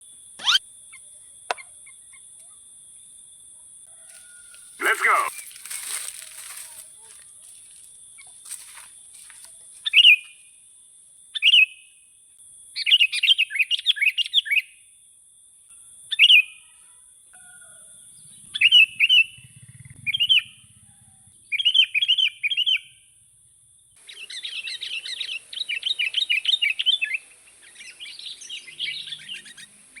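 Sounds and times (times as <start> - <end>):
songbird chirping: 4.0 - 10.5, 11.3 - 12.0, 15.7 - 23.2, 23.8 - 30.0.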